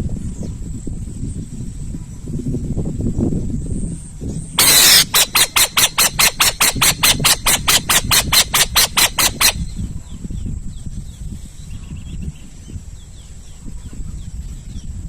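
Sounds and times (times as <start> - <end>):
owl screeching: 4.6 - 9.6.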